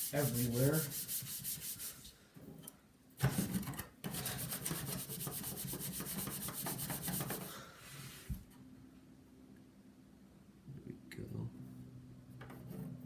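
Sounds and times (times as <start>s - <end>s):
sponge scrubbing plastic: 0.0s - 2.0s.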